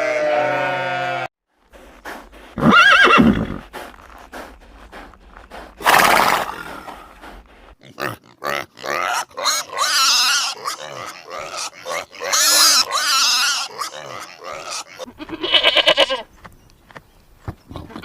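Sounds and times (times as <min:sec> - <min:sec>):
animal bleat: 0:00.0 - 0:01.3, 0:07.8 - 0:16.3
horse breathy blow: 0:01.6 - 0:07.8
horse neighing: 0:02.6 - 0:03.7, 0:05.8 - 0:07.2, 0:14.9 - 0:16.3.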